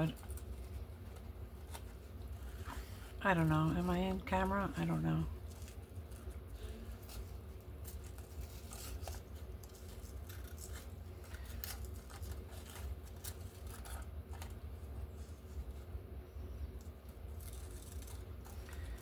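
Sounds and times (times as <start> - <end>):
steady low hum: 0.0 - 19.0
scissors snipping paper: 5.4 - 14.6, 16.8 - 19.0.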